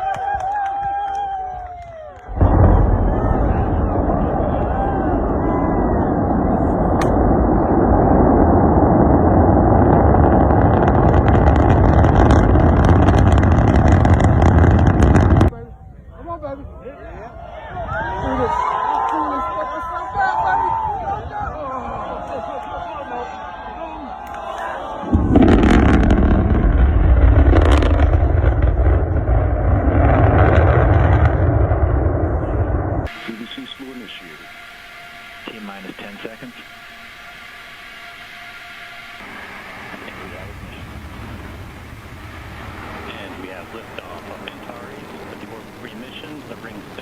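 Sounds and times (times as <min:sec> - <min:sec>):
rocket engine rumble: 0:00.0 - 0:16.2, 0:24.7 - 0:47.0
crackling: 0:01.8 - 0:15.5, 0:25.1 - 0:47.0.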